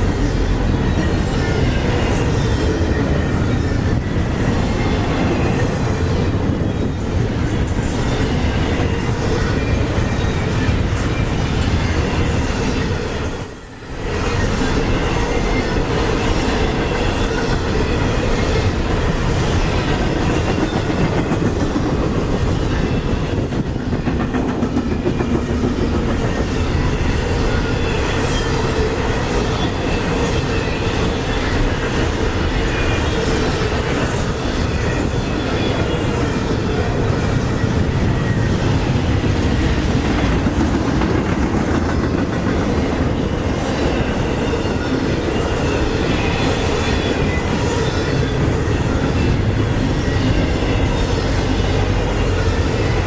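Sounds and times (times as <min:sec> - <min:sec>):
high wheel squeal: 0:08.0 - 0:21.0, 0:42.6 - 0:53.0
train wheels clattering over joints: 0:14.6 - 0:29.0.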